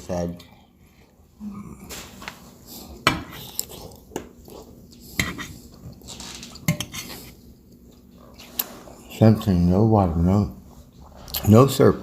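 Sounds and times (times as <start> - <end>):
dishes and cutlery clinking: 5.2 - 7.3.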